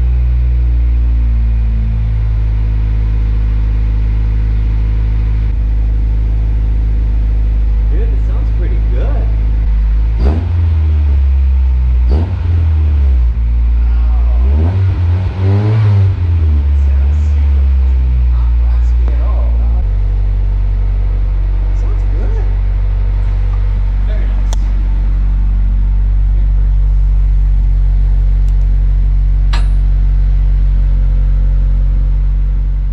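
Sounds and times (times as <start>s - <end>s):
car engine revving: 0.0s - 32.9s
sharp click: 29.5s - 29.9s.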